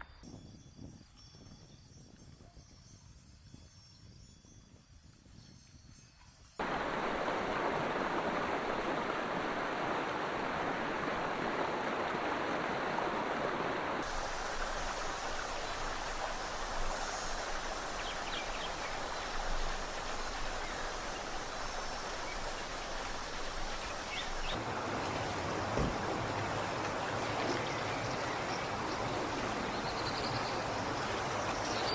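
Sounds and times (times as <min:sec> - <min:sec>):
stream water rushing: 0:06.6 - 0:31.9.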